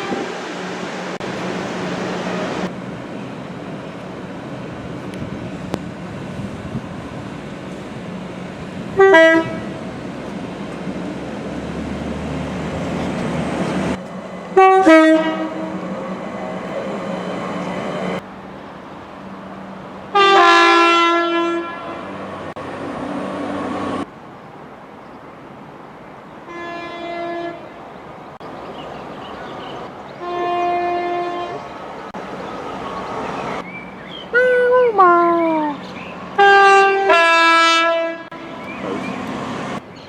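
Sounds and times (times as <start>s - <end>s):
two-tone train horn: 0.0s - 0.4s, 9.0s - 9.8s, 14.6s - 15.8s, 20.1s - 22.2s, 26.5s - 27.7s, 30.2s - 31.7s, 36.4s - 38.6s
train rumble: 0.0s - 24.2s.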